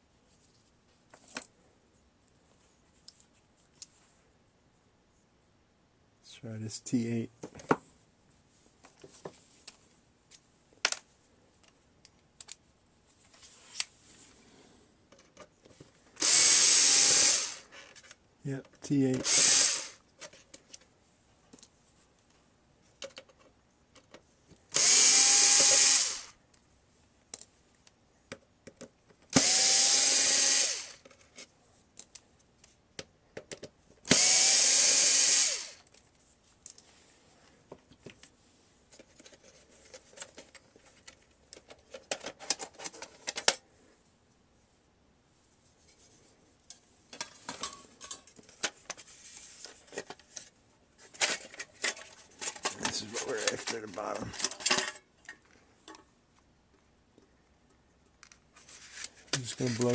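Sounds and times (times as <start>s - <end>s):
electric screwdriver whirring: 16.2s - 17.7s, 19.2s - 20.0s, 24.7s - 26.4s, 29.4s - 31.0s, 34.1s - 35.8s
screws clicking and rattling: 24.8s - 26.3s.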